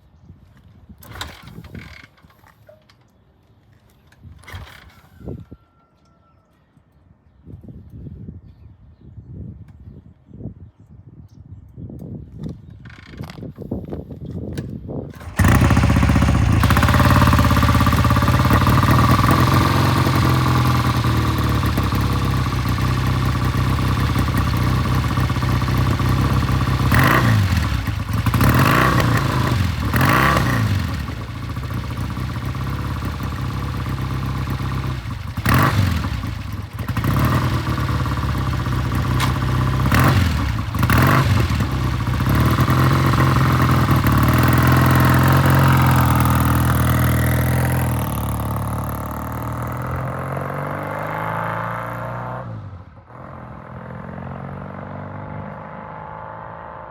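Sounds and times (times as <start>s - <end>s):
motorcycle engine starting and revving: 1.0s - 2.6s, 4.3s - 5.4s, 14.6s - 56.9s.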